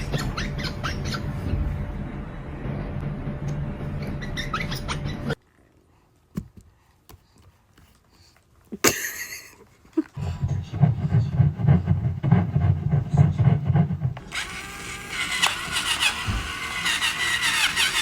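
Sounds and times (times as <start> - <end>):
low hum: 0.0 - 5.4.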